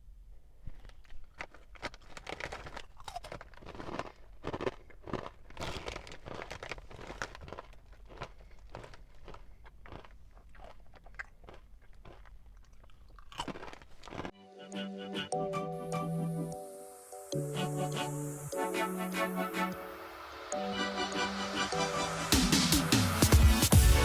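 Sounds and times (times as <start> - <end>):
person chewing crunchy food: 0.0 - 14.3.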